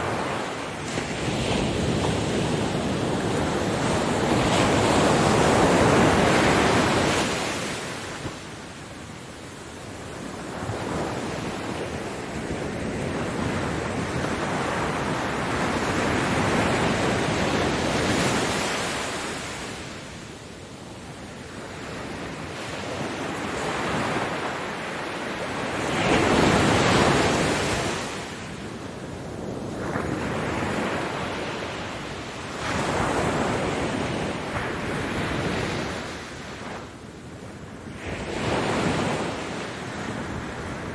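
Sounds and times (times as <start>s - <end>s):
ocean waves breaking on beach: 0.0s - 40.9s.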